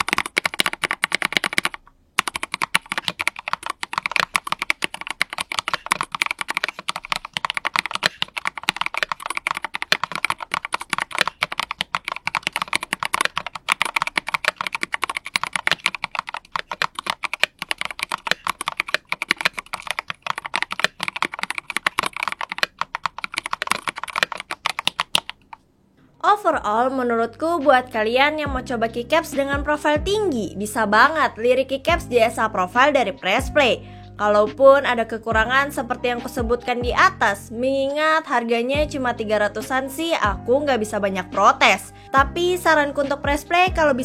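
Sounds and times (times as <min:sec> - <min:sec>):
mechanical keyboard typing: 0:00.0 - 0:25.6.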